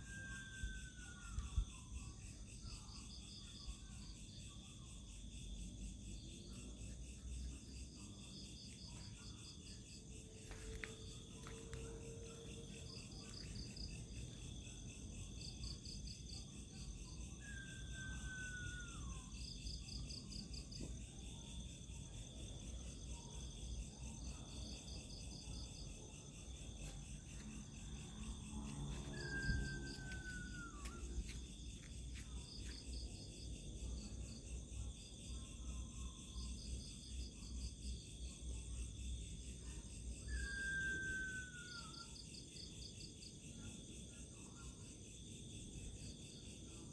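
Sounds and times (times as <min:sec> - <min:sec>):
crickets and insects calling: 0:00.0 - 0:46.9
falling whistle: 0:29.0 - 0:31.1, 0:40.3 - 0:42.0.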